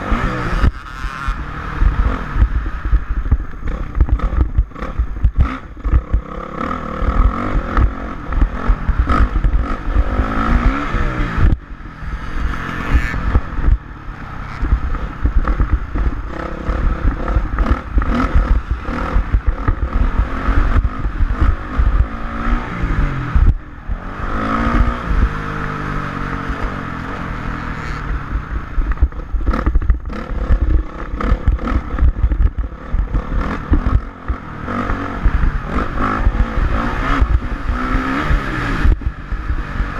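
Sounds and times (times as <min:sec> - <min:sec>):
dirt bike engine revving: 0:00.0 - 0:39.9
clatter on microphone: 0:00.4 - 0:11.6, 0:14.5 - 0:22.2, 0:28.8 - 0:39.7.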